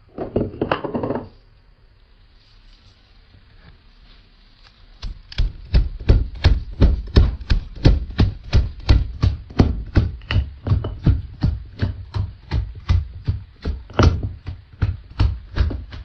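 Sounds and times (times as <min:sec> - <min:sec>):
chopping on a board: 0:05.0 - 0:16.0.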